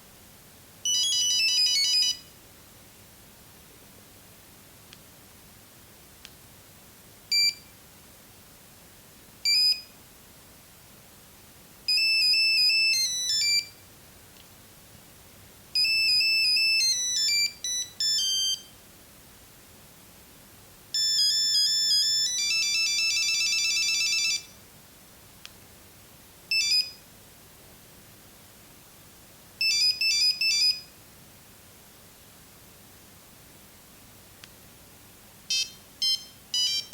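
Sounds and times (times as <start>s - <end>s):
monophonic phone ringtones: 0.9s - 2.3s, 12.0s - 13.7s, 15.8s - 18.7s, 21.0s - 24.5s, 29.6s - 30.8s, 35.5s - 36.9s.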